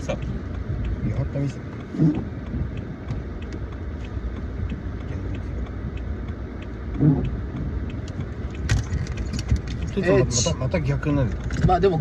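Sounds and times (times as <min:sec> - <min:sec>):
faint light ticking: 0:00.0 - 0:08.7
car road and engine rumble: 0:00.0 - 0:12.0.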